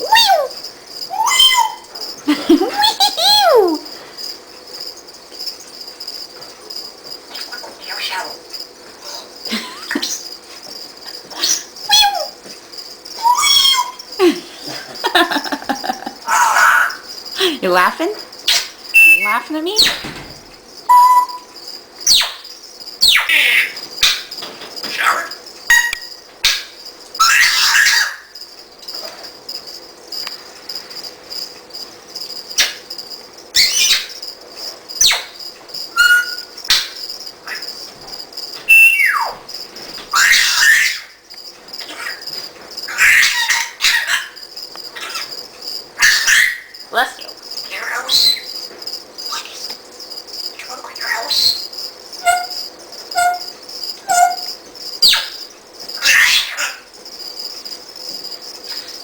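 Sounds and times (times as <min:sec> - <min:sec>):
parrot whistling: 0:00.0 - 0:01.9, 0:11.3 - 0:12.4, 0:13.2 - 0:14.0, 0:18.5 - 0:19.4, 0:20.9 - 0:21.5, 0:22.1 - 0:24.2, 0:25.0 - 0:26.2, 0:27.2 - 0:28.3, 0:33.6 - 0:34.2, 0:35.0 - 0:37.6, 0:38.7 - 0:39.4, 0:40.1 - 0:41.2, 0:42.9 - 0:44.4, 0:46.0 - 0:46.8, 0:47.7 - 0:48.6, 0:50.6 - 0:52.6, 0:53.2 - 0:55.4
crickets chirping: 0:00.0 - 0:59.0.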